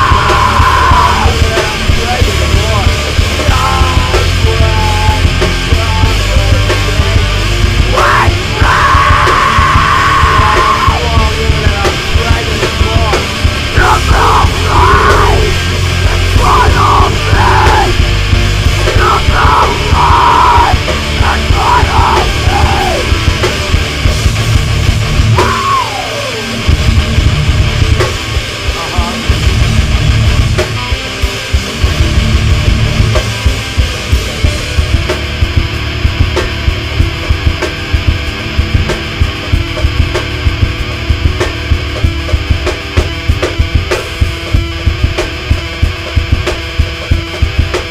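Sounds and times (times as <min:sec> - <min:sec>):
screamed vocals: 0:00.0 - 0:02.2, 0:03.4 - 0:06.2, 0:07.8 - 0:12.3, 0:13.7 - 0:18.1, 0:18.8 - 0:23.2, 0:25.4 - 0:26.6
metal band playing: 0:00.0 - 0:47.9.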